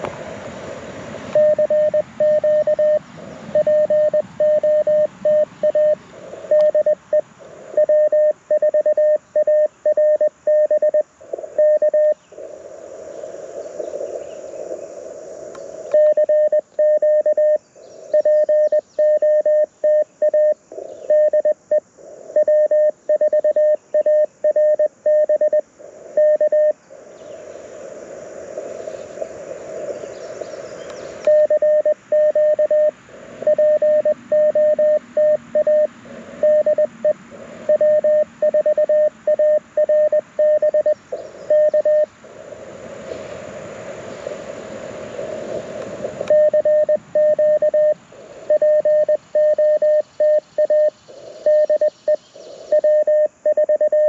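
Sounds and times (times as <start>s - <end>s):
receiver hiss: 0.0s - 54.0s
morse code beeps: 1.3s - 12.2s, 15.9s - 21.8s, 22.4s - 25.6s, 26.2s - 26.8s, 31.3s - 42.1s, 46.3s - 54.0s.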